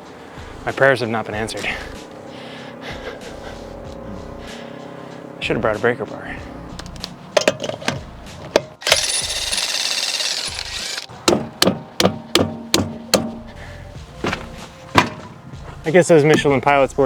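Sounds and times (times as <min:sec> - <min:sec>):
impact wrench hammering: 0:06.8 - 0:13.4
sharp metallic clanks: 0:06.8 - 0:13.4.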